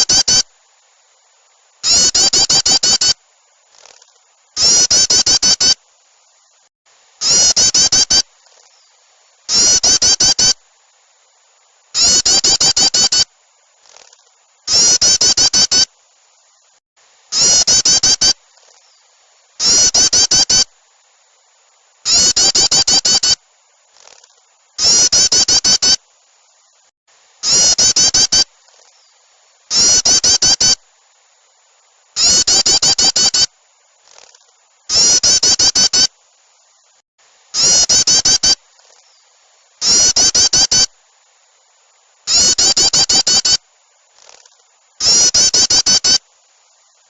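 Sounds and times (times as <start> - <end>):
songbird chattering alarm call: 0.0 - 0.5, 1.8 - 3.2, 4.6 - 5.8, 7.2 - 8.9, 9.5 - 10.6, 12.0 - 13.3, 14.7 - 15.9, 17.3 - 19.0, 19.6 - 20.7, 22.1 - 23.4, 24.8 - 26.0, 27.4 - 30.8, 32.2 - 33.5, 34.9 - 36.1, 37.6 - 39.2, 39.8 - 40.9, 42.3 - 43.6, 45.0 - 46.2
faint scratchy sound: 3.1 - 4.6, 8.2 - 9.6, 13.2 - 14.7, 18.4 - 19.6, 23.4 - 24.8, 28.4 - 29.7, 33.5 - 34.9, 38.5 - 39.8, 43.6 - 45.1
songbirds harsh chattering calls: 32.2 - 33.5, 37.6 - 39.2, 39.8 - 40.9, 42.3 - 43.6.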